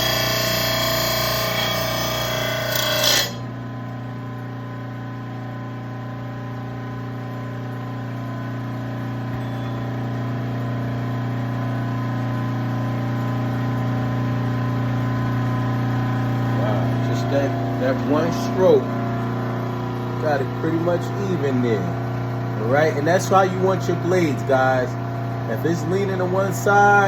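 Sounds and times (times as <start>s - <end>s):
grinder grinding steel blade: 0.0s - 3.5s
motor humming unloaded: 0.0s - 4.2s.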